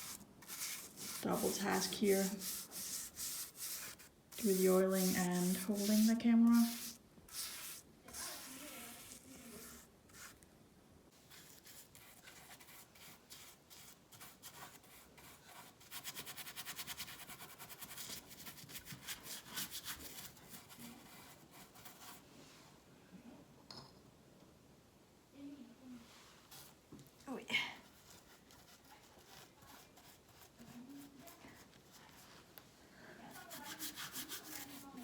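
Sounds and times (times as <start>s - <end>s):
paintbrush swishing on wood: 0.0s - 10.4s, 33.3s - 35.0s.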